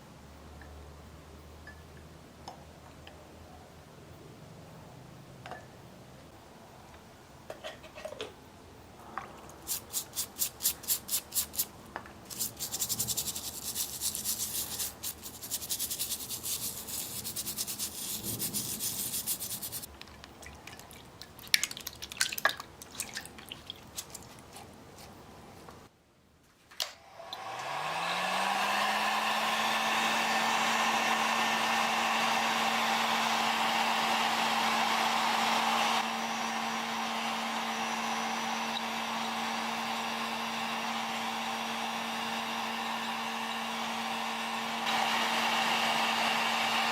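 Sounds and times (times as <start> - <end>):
rapid scrubbing strokes: 9.6 - 11.7, 12.3 - 19.9
small electric motor running: 12.3 - 19.9.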